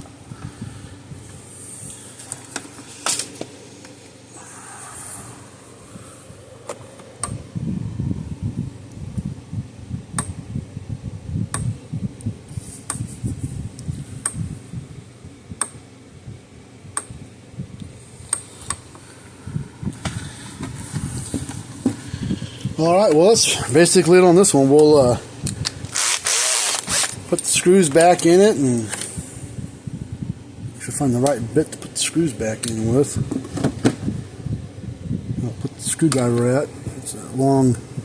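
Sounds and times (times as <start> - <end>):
electric fence charger clicks: 6.6 - 7.4, 10.2 - 10.4
handling knocks on plastic case: 33.3 - 34.0.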